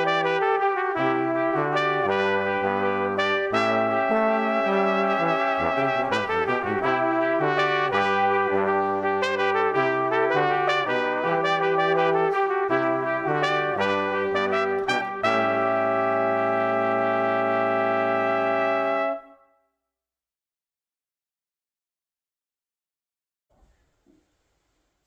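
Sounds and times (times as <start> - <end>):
brass music melody: 0.0 - 19.6.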